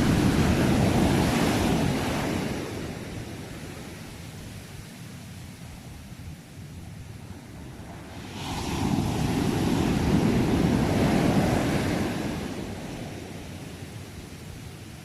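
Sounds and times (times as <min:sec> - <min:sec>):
wave breaking on shore: 0:00.0 - 0:04.3, 0:07.2 - 0:14.0
surf hissing: 0:00.0 - 0:05.1, 0:07.0 - 0:15.0.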